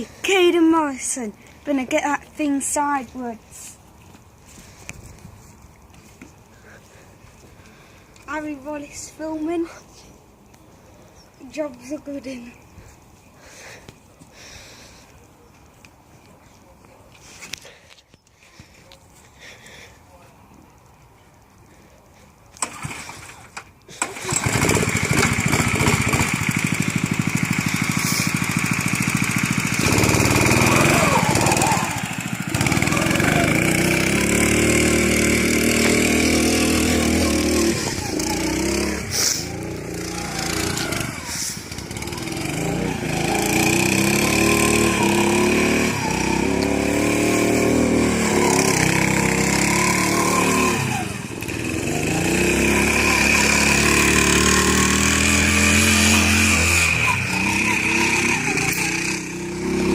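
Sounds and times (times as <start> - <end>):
go kart engine revving: 22.6 - 59.9.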